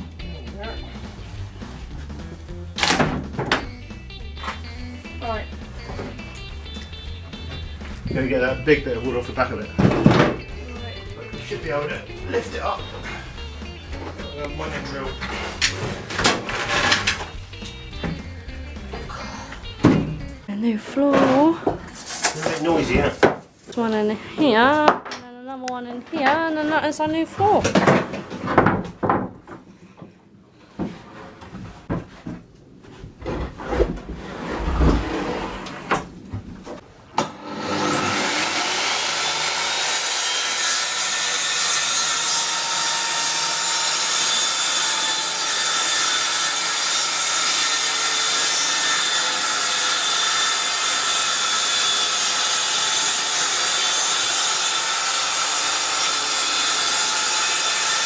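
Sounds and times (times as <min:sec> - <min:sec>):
wooden knocks and clatter: 0:02.8 - 0:03.8, 0:27.1 - 0:30.2
power tool whining on wood: 0:37.3 - 0:58.0.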